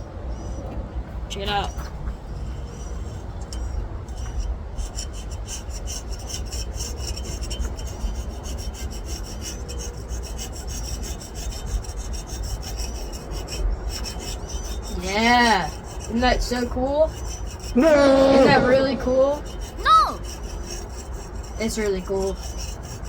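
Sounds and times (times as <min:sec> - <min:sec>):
file rasping back and forth: 0:00.0 - 0:23.0.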